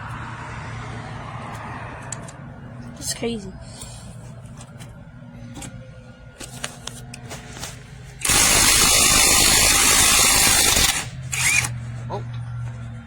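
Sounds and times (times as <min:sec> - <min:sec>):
impact wrench hammering lug nut: 0:08.2 - 0:11.6.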